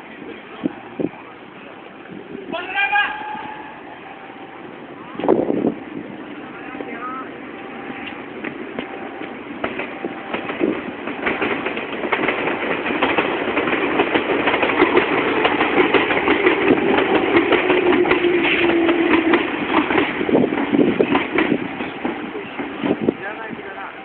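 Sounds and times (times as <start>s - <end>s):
train wheels clattering over rail joints: 8.0s - 23.2s.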